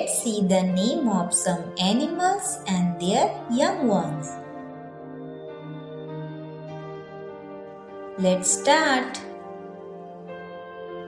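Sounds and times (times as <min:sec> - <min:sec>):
soft music of held chords: 0:00.0 - 0:11.0.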